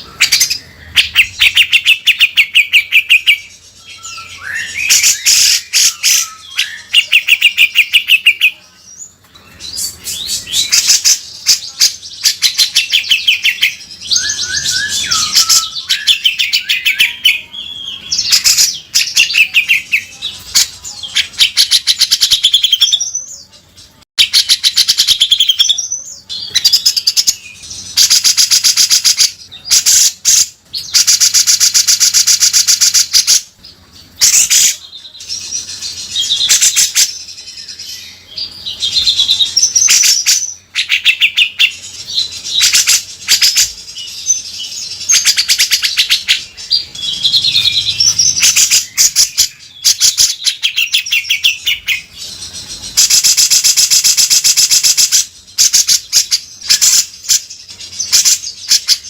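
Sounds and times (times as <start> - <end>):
bird whistled phrases: 0.0 - 8.6, 9.5 - 23.2.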